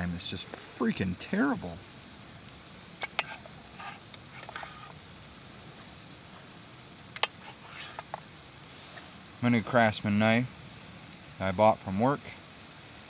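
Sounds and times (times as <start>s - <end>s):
faint steady hiss: 0.0s - 13.0s
soft rustling: 2.2s - 9.5s.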